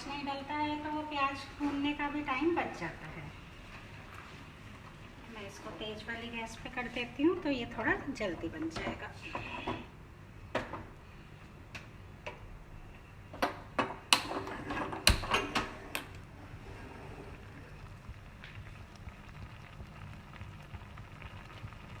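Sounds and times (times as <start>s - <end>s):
gas burner hissing: 5.3s - 18.6s.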